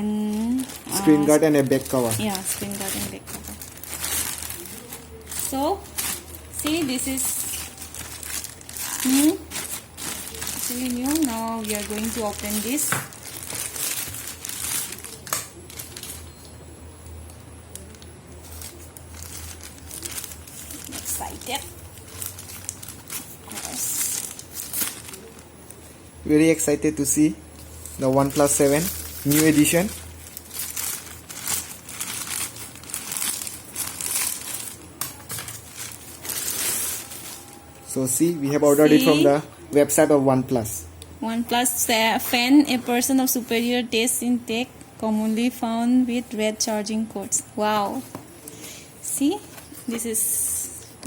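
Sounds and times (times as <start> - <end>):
packaging crinkling and rustling: 0.3 - 16.6, 17.7 - 25.9, 26.6 - 39.2.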